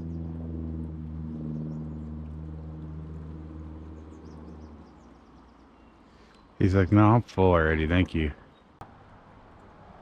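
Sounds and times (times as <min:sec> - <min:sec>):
motor droning: 0:00.0 - 0:05.0
faint bird chirps: 0:01.3 - 0:06.7, 0:08.3 - 0:08.8.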